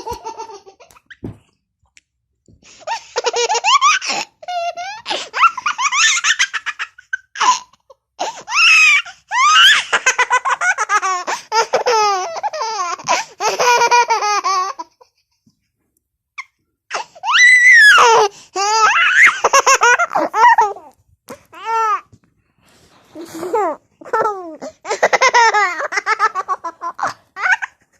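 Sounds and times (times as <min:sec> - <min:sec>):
baby laughing: 0:00.0 - 0:01.2, 0:02.9 - 0:15.1, 0:18.0 - 0:22.1, 0:23.2 - 0:27.9.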